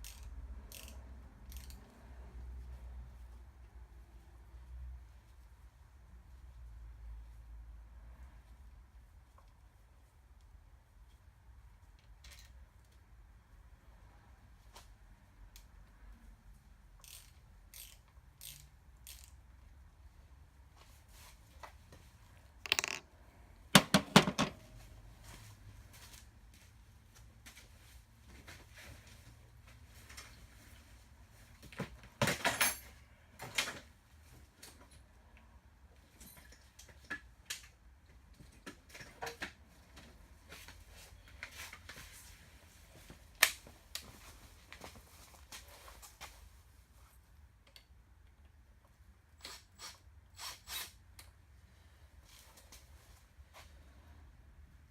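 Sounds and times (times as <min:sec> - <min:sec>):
hand tools clicking and knocking: 0:22.7 - 0:23.0, 0:23.8 - 0:24.6
metal tools clicking and rattling: 0:22.7 - 0:23.0.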